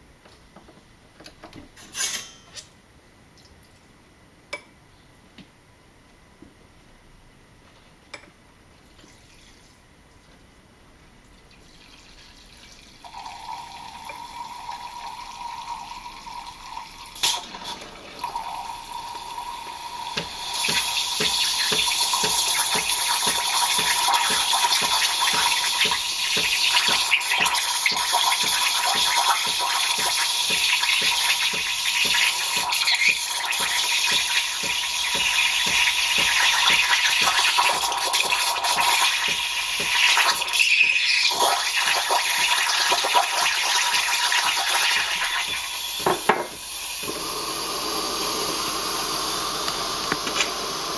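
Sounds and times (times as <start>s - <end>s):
espresso machine hum: 13.0s - 50.9s
hissing rush of steam: 46.6s - 50.9s.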